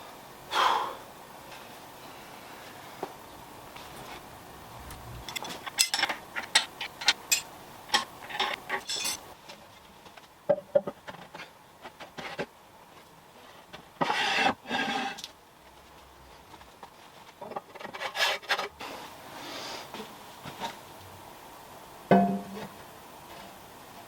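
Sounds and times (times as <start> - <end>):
metal parts clinking: 5.3 - 7.5, 8.4 - 9.2
metal scrape: 14.0 - 15.2
ringing metal taps: 22.1 - 22.7.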